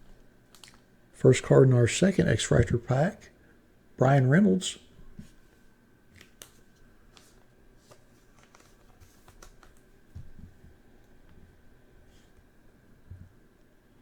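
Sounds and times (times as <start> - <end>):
trading cards being handled: 6.1 - 10.4.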